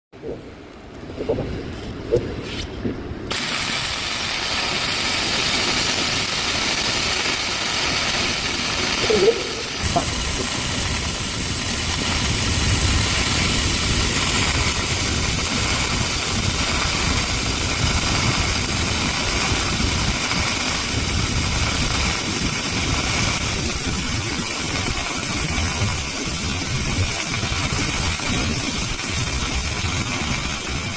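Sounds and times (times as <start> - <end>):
welding arc hissing: 3.3 - 30.9
low rumble: 9.1 - 19.4.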